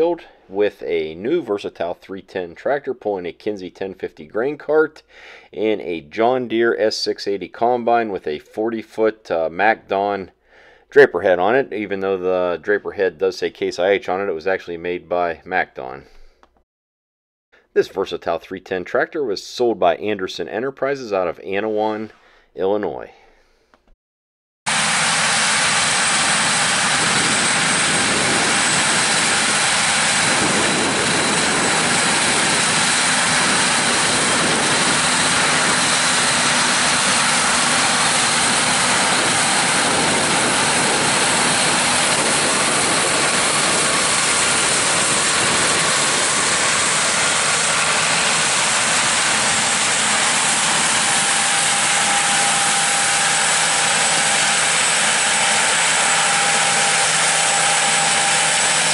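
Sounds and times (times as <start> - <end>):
harvest machinery engine running: 24.7 - 58.9.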